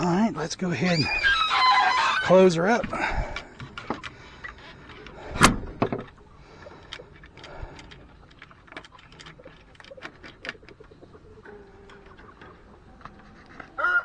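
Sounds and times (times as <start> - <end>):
light clicks and handling noises: 2.8 - 13.8.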